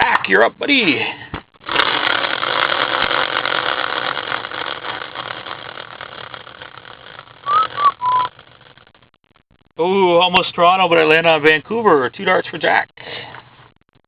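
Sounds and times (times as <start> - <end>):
prize wheel clicker ticking: 1.6 - 8.8.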